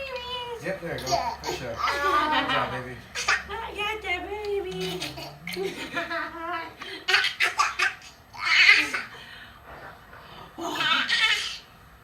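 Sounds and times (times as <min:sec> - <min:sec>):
person laughing: 0:04.8 - 0:07.2.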